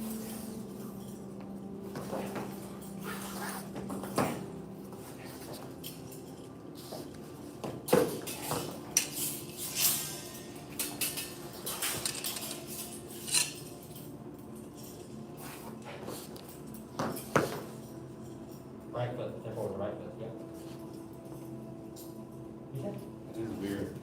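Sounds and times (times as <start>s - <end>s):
butterfly knives clinking: 8.2s - 14.0s.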